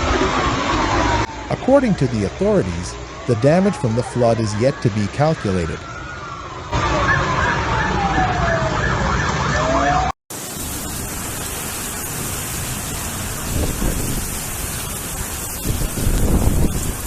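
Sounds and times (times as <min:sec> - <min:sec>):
emergency vehicle siren wailing: 0:00.0 - 0:10.2
traffic noise: 0:00.0 - 0:17.0
steady rushing hiss: 0:10.3 - 0:17.0.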